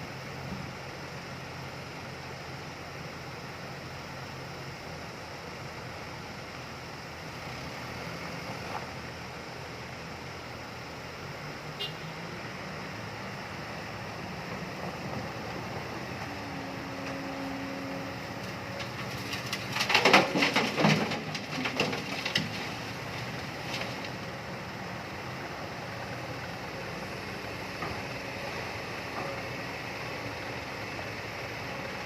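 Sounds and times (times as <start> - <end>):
excavator engine running: 0.1 - 32.0
clattering and scraping: 18.4 - 24.2.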